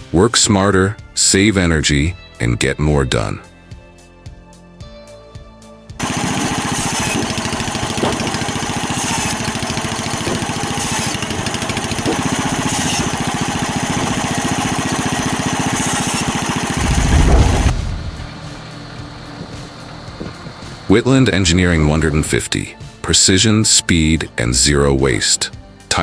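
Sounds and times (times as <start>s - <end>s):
machinery engine pulsing: 16.4s - 20.6s.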